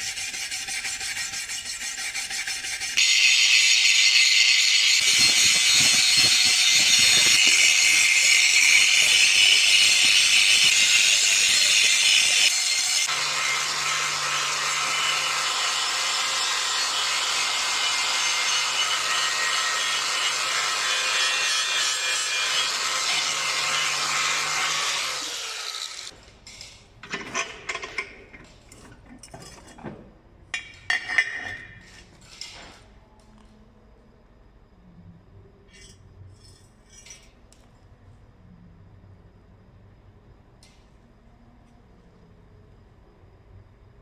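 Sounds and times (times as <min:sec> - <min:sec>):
angle grinder grinding steel: 0:00.0 - 0:26.2.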